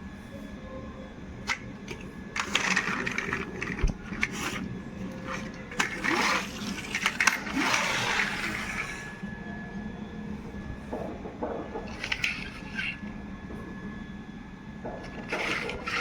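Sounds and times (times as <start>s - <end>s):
steady hum: 0.0s - 16.0s
toy vehicles clattering: 1.4s - 9.2s, 11.5s - 13.1s, 14.8s - 16.0s.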